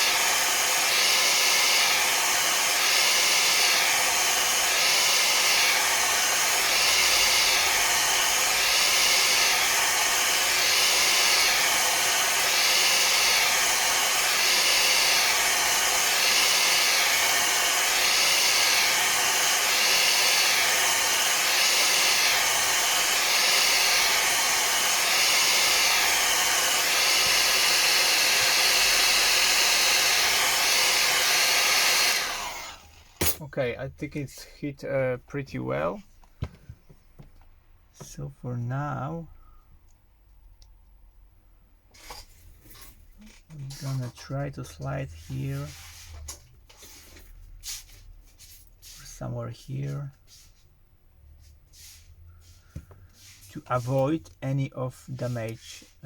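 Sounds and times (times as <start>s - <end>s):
hair dryer blowing: 0.0s - 33.4s, 43.5s - 50.5s, 51.8s - 56.0s.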